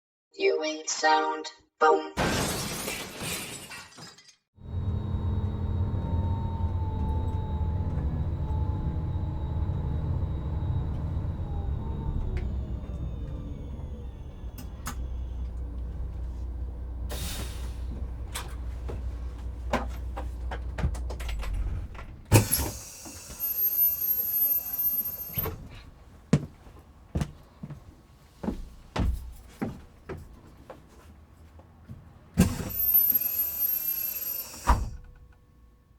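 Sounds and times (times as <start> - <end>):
bus engine running: 4.6 - 28.2, 31.2 - 35.2
bus door clunks: 17.1 - 23.4, 32.4 - 33.0, 34.6 - 35.3
pneumatic air hiss: 22.3 - 25.4, 32.4 - 35.0.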